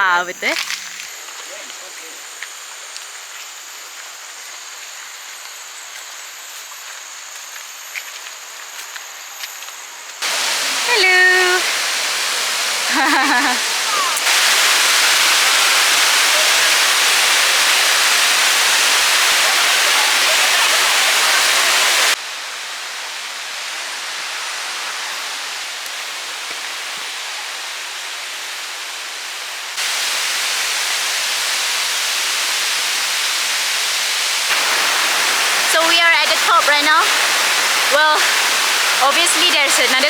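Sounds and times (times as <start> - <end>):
waterfall rushing: 10.2 - 22.2, 29.8 - 40.0.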